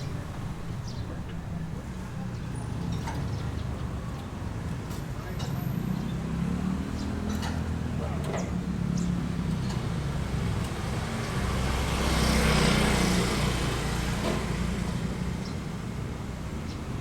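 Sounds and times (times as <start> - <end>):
vehicle engine passing: 5.8 - 15.2.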